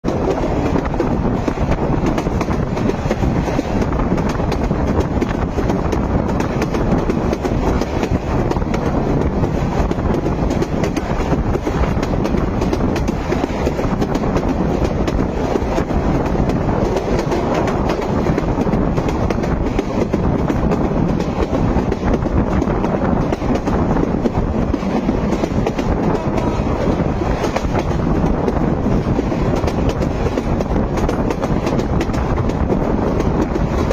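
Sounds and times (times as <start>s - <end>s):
train rumbling: 0.0s - 33.9s
wheels clattering on rails: 0.0s - 33.9s.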